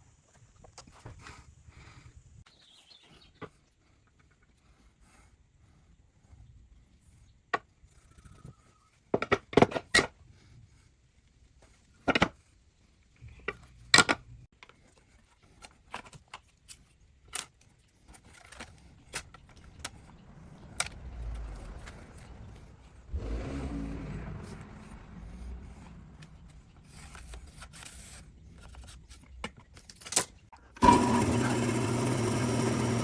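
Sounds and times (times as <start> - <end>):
low rumble: 19.5 - 27.7.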